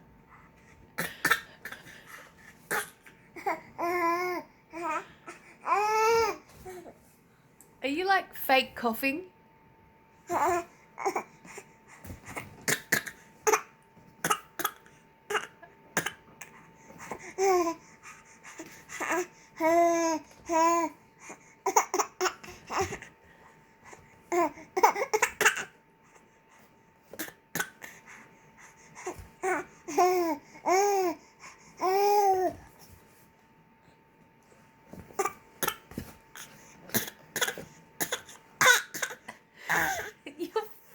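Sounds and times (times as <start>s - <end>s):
baby fake coughing: 1.0s - 2.0s, 12.6s - 16.3s, 24.8s - 25.7s, 27.2s - 27.8s, 35.2s - 40.1s.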